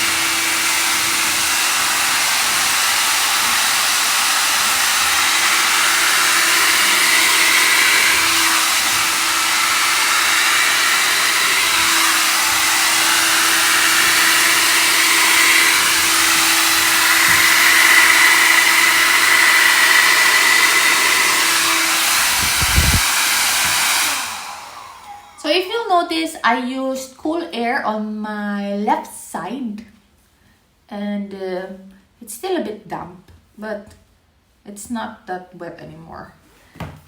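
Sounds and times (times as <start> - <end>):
hair dryer running: 0.0 - 25.9.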